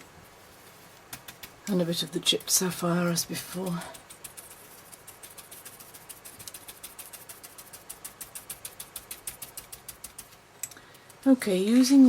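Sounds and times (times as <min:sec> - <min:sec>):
ink tool tapping on card: 0:01.0 - 0:01.6, 0:03.9 - 0:10.4.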